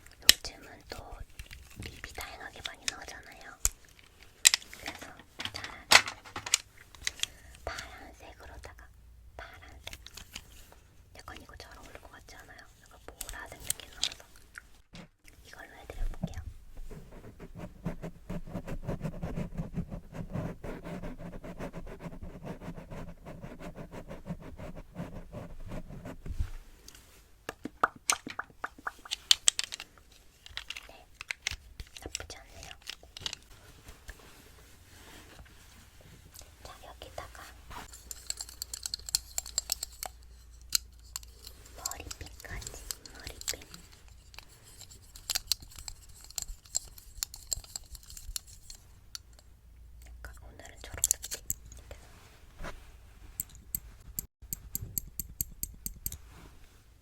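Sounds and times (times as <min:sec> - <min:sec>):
crisp crinkly clicks: 0:00.0 - 0:07.8, 0:09.7 - 0:10.5, 0:11.3 - 0:15.4, 0:28.1 - 0:34.2, 0:37.8 - 0:49.5, 0:50.8 - 0:52.0
rubbing or scratching strokes: 0:16.8 - 0:27.2, 0:33.5 - 0:48.9, 0:51.8 - 0:54.3.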